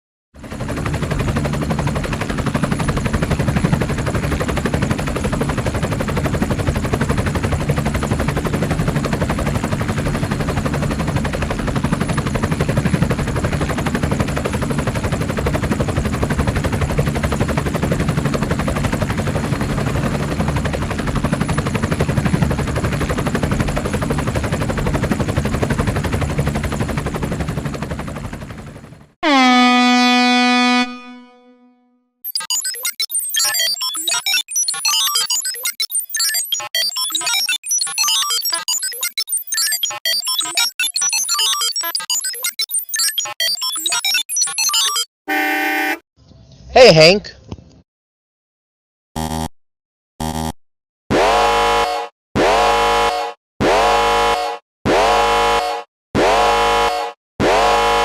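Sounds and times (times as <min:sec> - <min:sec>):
tugboat horn blast: 0:29.2 - 0:32.0, 0:45.3 - 0:46.0, 0:51.3 - 0:58.0.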